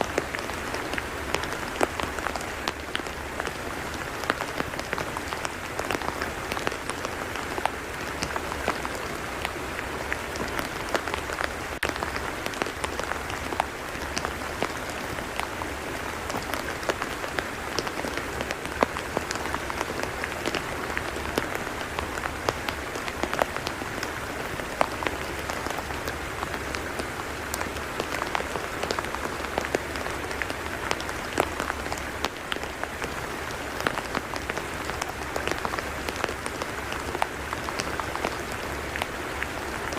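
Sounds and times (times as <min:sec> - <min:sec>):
rain pattering on mud: 0:00.0 - 0:39.9.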